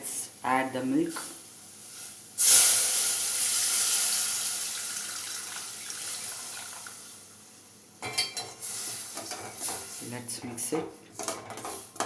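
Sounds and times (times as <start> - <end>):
milk sizzling in hot pan: 1.1 - 10.2.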